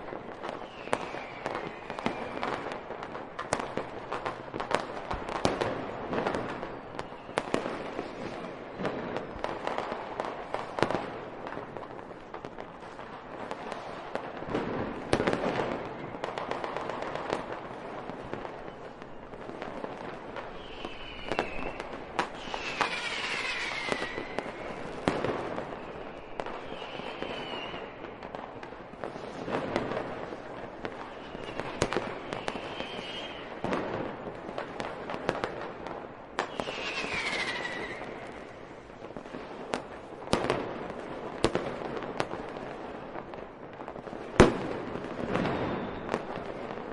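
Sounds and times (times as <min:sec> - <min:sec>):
fireworks bangs and crackling: 0:00.0 - 0:46.9
firework whistles: 0:00.3 - 0:02.8, 0:06.2 - 0:10.8, 0:20.4 - 0:28.4, 0:29.1 - 0:34.0, 0:36.4 - 0:39.2, 0:45.2 - 0:46.7.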